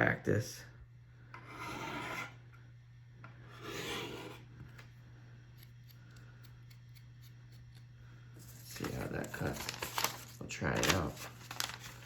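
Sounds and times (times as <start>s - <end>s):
steady low hum: 0.0s - 12.0s
blade on sharpening rod: 1.5s - 2.4s.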